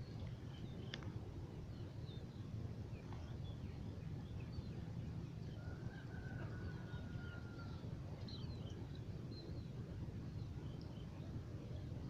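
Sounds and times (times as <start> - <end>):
low steady rumble: 0.0 - 12.0
distant rooster crowing: 5.6 - 7.8.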